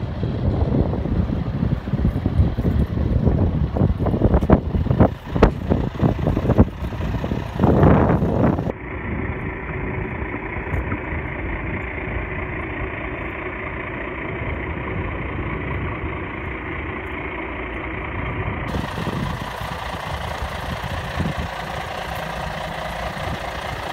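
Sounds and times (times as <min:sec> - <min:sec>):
diesel truck engine idling: 0:00.0 - 0:23.9.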